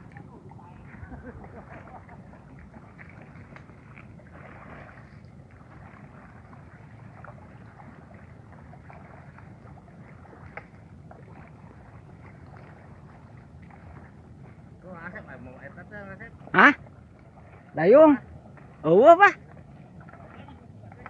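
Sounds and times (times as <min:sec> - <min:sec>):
water splashing and lapping: 0:00.0 - 0:21.0.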